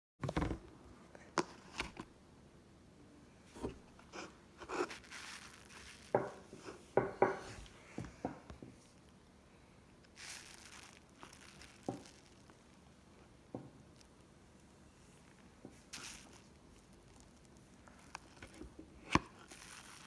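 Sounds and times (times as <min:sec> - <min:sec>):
slime soft crackling: 0:04.7 - 0:06.8, 0:10.0 - 0:20.0.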